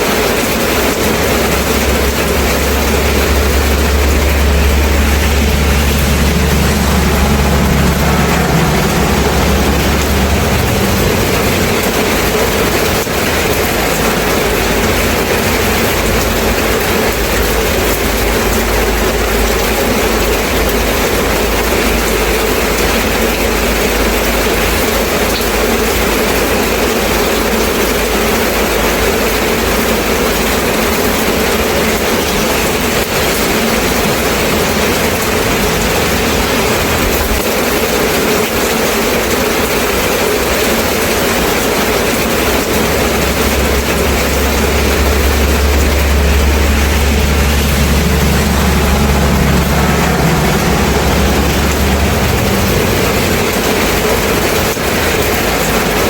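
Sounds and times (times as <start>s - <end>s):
steady rain falling: 0.0s - 56.0s
low rumble: 0.3s - 25.3s, 40.4s - 56.0s.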